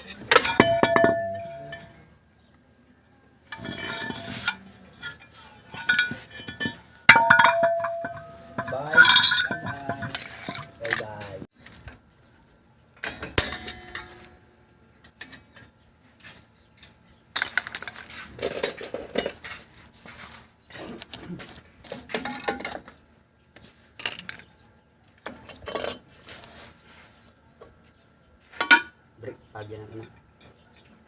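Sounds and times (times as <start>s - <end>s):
metal tools clinking and clattering: 0.0s - 2.1s, 3.4s - 12.0s, 13.0s - 14.4s, 16.8s - 19.7s, 20.7s - 23.0s, 25.2s - 26.2s, 28.6s - 28.9s.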